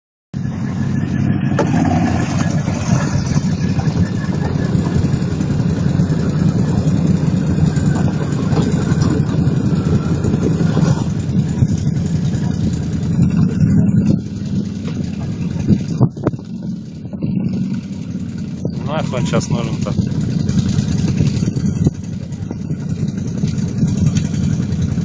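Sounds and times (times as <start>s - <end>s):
quad bike engine running: 0.4s - 25.0s.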